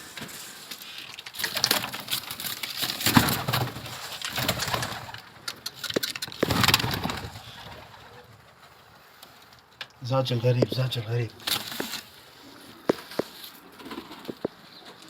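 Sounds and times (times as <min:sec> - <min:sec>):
pigeons cooing: 0:03.0 - 0:09.3, 0:10.4 - 0:15.0.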